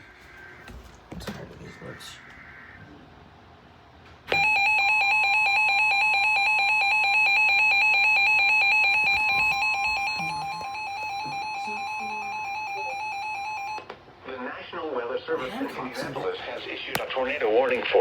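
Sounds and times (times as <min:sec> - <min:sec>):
electronic alarm tone: 0:04.3 - 0:13.9.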